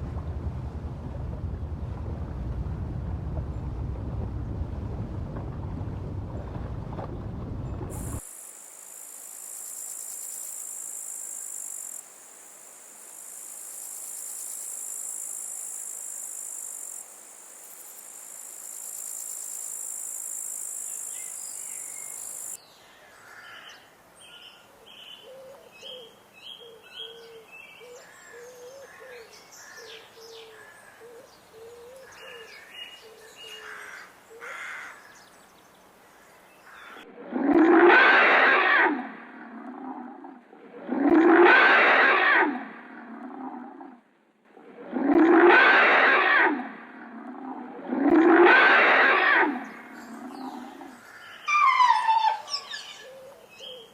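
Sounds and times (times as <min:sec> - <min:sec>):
high insect drone: 0:08.0 - 0:22.6
bird chirping: 0:50.0 - 0:53.9.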